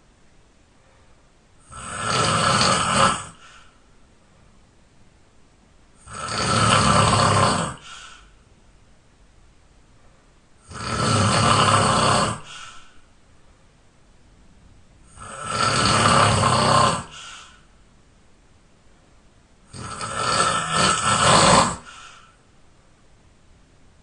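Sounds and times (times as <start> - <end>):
person snoring loudly: 1.6 - 3.7, 6.0 - 8.2, 10.6 - 12.9, 15.1 - 17.7, 19.7 - 22.3.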